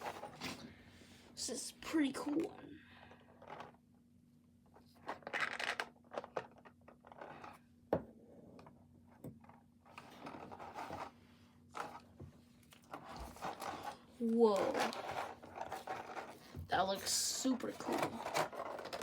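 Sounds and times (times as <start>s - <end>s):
plastic packing rustling and crinkling: 12.7s - 19.0s.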